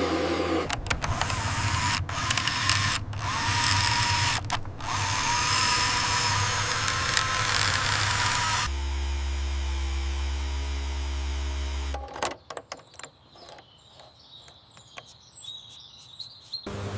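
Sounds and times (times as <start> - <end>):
small electric motor whirring: 0.0 - 12.0.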